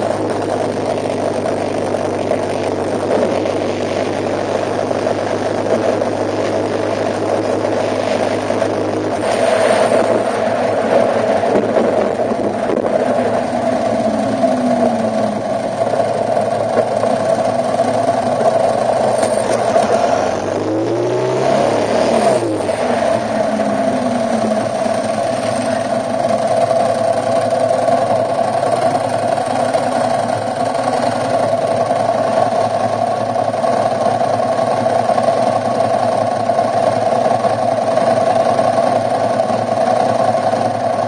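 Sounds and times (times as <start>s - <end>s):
car engine and road noise: 0.0s - 41.0s
low steady hum: 0.0s - 41.0s.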